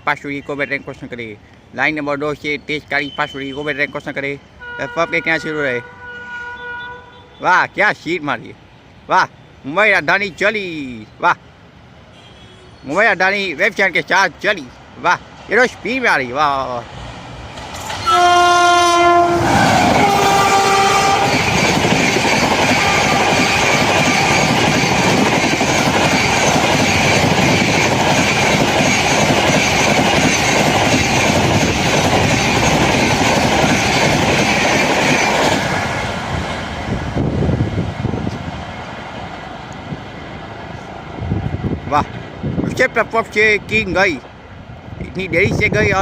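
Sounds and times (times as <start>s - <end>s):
locomotive horn blasts: 4.6s - 7.5s, 18.0s - 21.4s, 22.8s - 24.4s
train rushing past: 9.9s - 46.0s.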